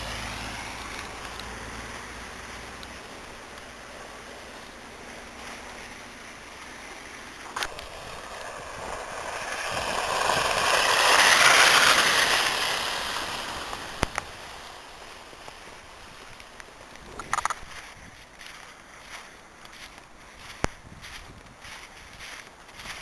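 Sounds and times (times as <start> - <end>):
tyres hissing through slush: 0.0 - 17.2.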